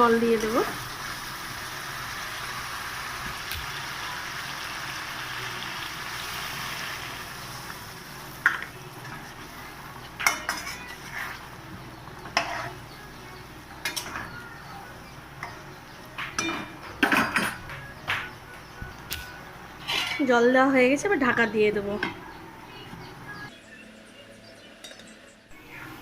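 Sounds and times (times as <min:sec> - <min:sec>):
curry hissing in hot pan: 0:00.0 - 0:08.4
metal spoon clinking against pan: 0:10.2 - 0:11.1, 0:12.3 - 0:12.8, 0:13.8 - 0:14.4, 0:16.4 - 0:17.7.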